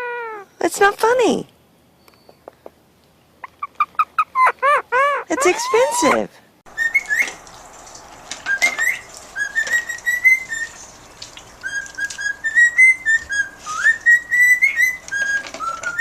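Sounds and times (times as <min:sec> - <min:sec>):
pet bird whistling: 0:03.6 - 0:06.2, 0:06.8 - 0:07.4, 0:08.5 - 0:10.8, 0:11.6 - 0:16.0.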